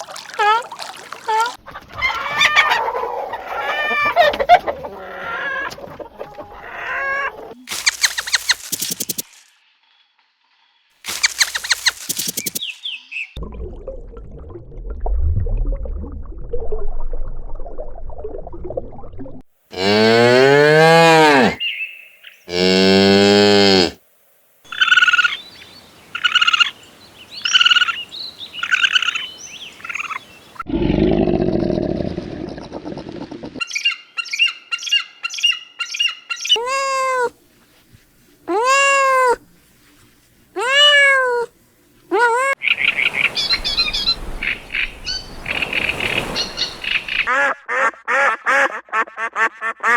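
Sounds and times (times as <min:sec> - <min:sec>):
short repeated animal calls: 0:07.7 - 0:09.4, 0:11.1 - 0:12.7
rapid chirping: 0:07.7 - 0:09.5, 0:11.1 - 0:13.0
cow mooing: 0:19.7 - 0:21.6, 0:22.5 - 0:24.0
cat meowing: 0:36.6 - 0:37.3, 0:38.5 - 0:39.4, 0:40.6 - 0:41.5, 0:42.1 - 0:42.6.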